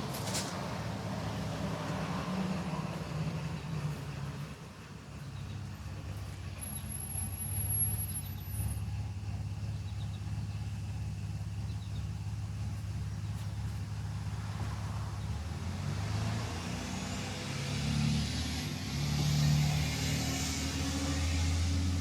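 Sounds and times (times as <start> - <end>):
vehicle engine humming: 0.0 - 22.0.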